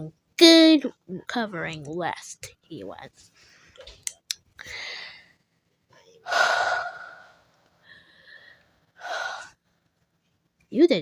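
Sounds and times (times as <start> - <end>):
person puffing and hissing: 6.3 - 7.3.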